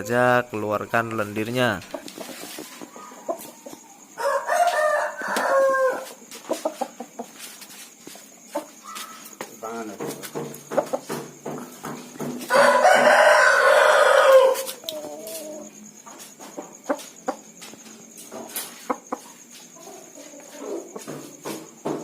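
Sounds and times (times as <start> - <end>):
rooster crowing: 0.0 - 1.0, 2.8 - 6.2, 12.4 - 15.8
chicken clucks: 1.8 - 9.4, 10.2 - 21.7.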